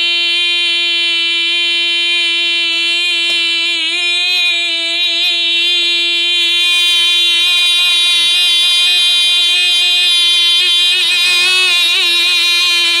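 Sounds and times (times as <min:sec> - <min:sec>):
person shouting long high note: 0:10.1 - 0:13.0.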